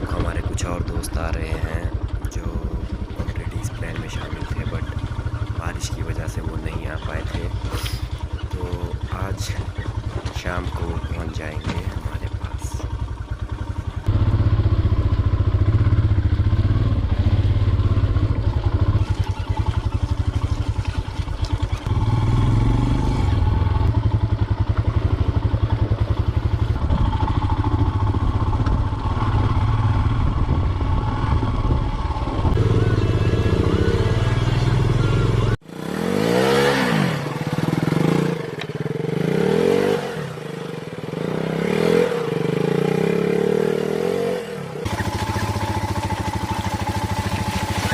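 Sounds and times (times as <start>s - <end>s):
motorcycle engine revving: 0.0s - 47.9s
motorcycle engine running: 0.0s - 47.9s.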